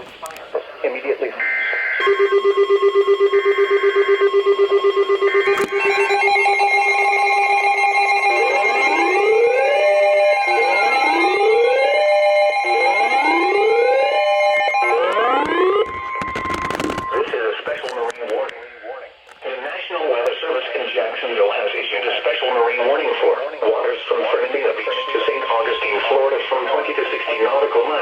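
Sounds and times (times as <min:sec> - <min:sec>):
weather radio alert alarms: 0:00.0 - 0:18.8, 0:21.7 - 0:28.0
fast beeping: 0:10.3 - 0:17.3, 0:24.2 - 0:28.0
harsh data bursts: 0:14.5 - 0:19.6, 0:20.5 - 0:28.0.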